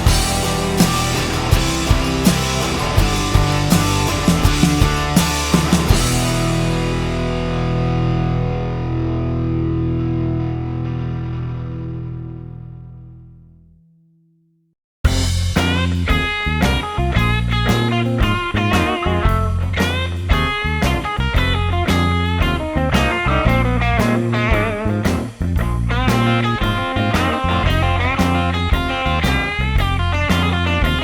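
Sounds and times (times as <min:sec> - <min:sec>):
bass and drums: 0:00.0 - 0:12.0, 0:15.0 - 0:31.0
electric guitar lead: 0:00.0 - 0:13.4.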